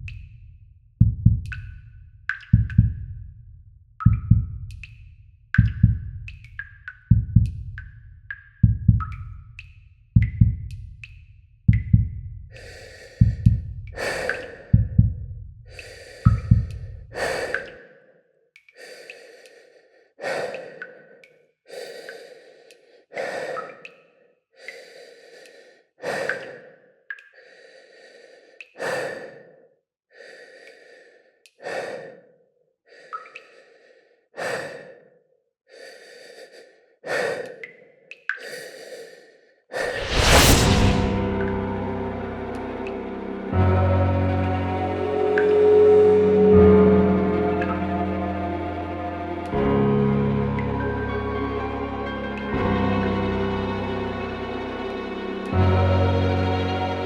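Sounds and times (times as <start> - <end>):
low drum-like thumps: 10.2 - 10.8.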